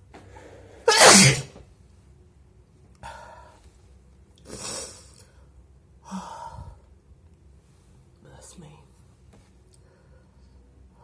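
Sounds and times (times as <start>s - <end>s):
loud wet sneeze: 0.8s - 1.6s
quiet breathy sounds: 2.9s - 11.0s.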